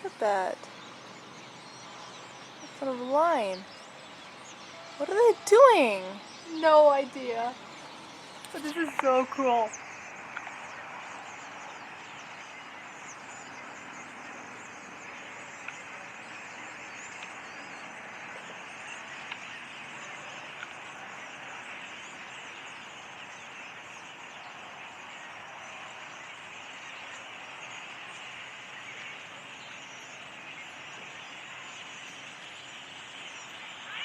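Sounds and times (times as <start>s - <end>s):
flock of birds chirping: 0.0s - 34.0s
steady hiss: 0.0s - 34.0s.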